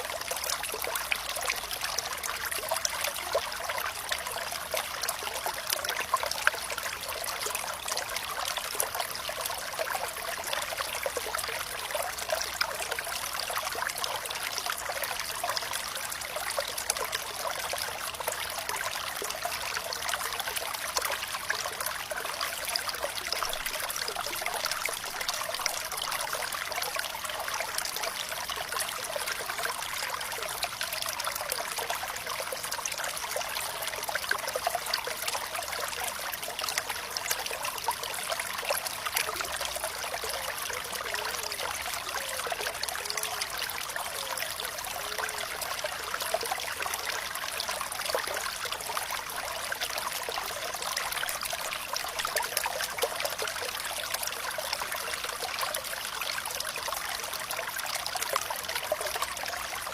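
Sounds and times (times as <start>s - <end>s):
water gurgles: 0.0s - 59.9s
water trickling and splashing: 0.0s - 59.9s.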